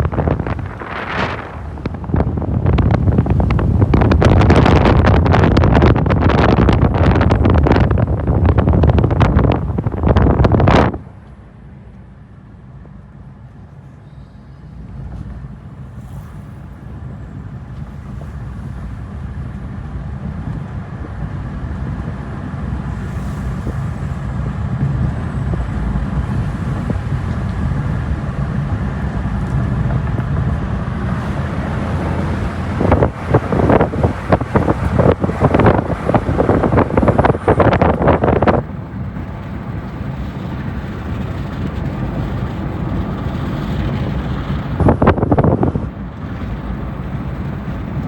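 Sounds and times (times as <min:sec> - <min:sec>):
wind buffeting microphone: 0:00.0 - 0:11.6, 0:12.8 - 0:48.0
car road and engine rumble: 0:00.0 - 0:48.0.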